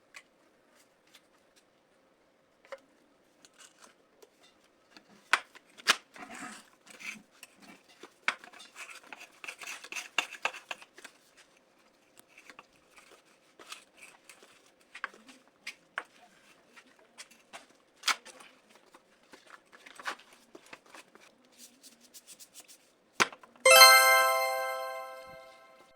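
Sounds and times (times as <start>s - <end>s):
bright ringing chime: 23.7s - 25.9s.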